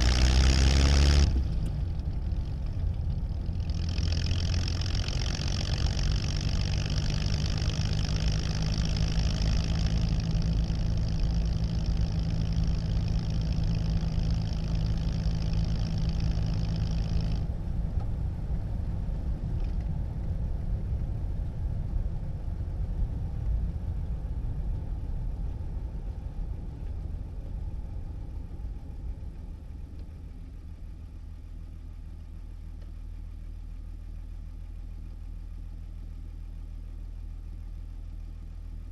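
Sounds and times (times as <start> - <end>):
car engine running in cabin: 0.0 - 38.9.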